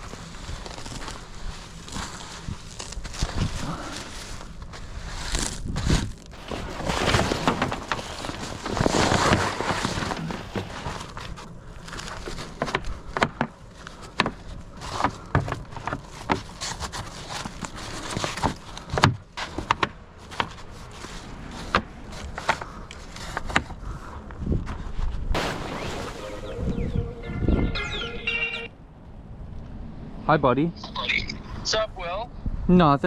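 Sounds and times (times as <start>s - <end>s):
rustling handling noise: 0.0s - 26.2s.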